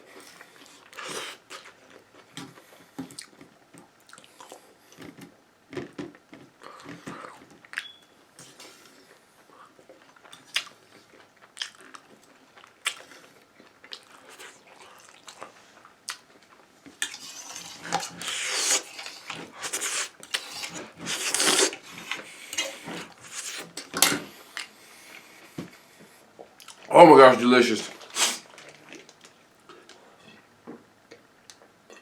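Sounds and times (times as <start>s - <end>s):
biting and chewing: 9.0s - 23.9s
fork scraping food container: 17.0s - 23.8s.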